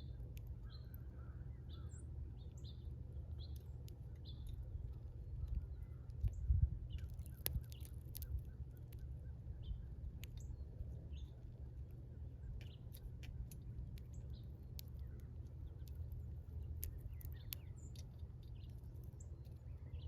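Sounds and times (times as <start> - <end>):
small birds chirping: 0.0 - 20.0
steady low rumble: 0.0 - 20.0
sharp little ticks: 3.4 - 9.2, 10.1 - 10.6, 11.8 - 19.8.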